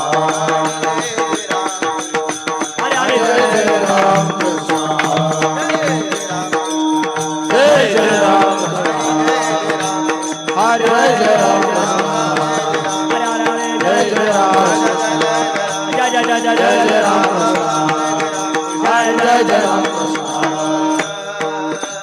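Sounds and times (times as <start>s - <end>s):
person singing: 2.8s - 6.6s, 7.5s - 22.0s.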